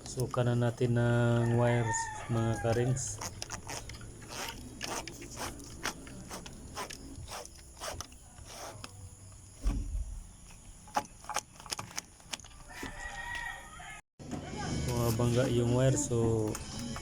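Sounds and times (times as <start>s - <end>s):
wire and tools clicking: 0.0s - 9.5s, 10.4s - 13.6s
rooster crowing: 1.2s - 3.2s, 12.6s - 14.0s.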